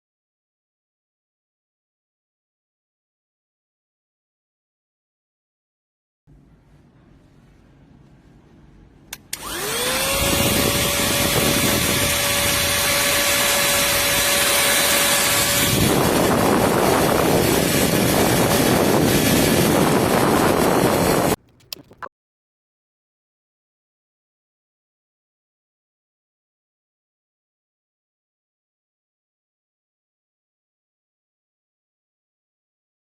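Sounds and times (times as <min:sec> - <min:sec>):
mini vacuum motor whine: 0:09.3 - 0:21.4.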